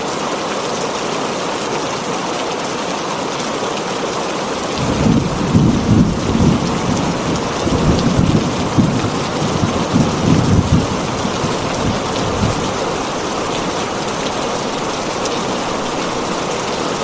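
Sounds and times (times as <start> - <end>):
heavy rain on a tin roof: 0.0 - 17.0
rolling thunder: 4.8 - 17.0.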